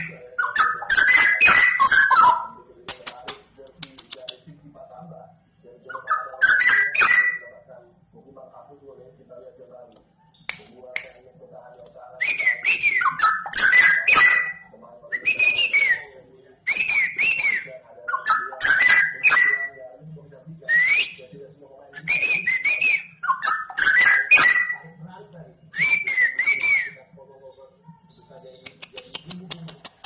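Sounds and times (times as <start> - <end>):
bird singing whistled and clicky notes: 0.0 - 2.5, 12.2 - 14.6, 16.7 - 19.8, 22.0 - 24.9.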